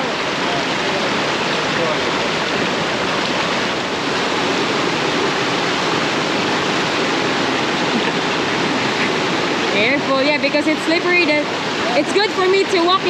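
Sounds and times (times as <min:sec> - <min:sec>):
waterfall roaring: 0:00.0 - 0:13.0.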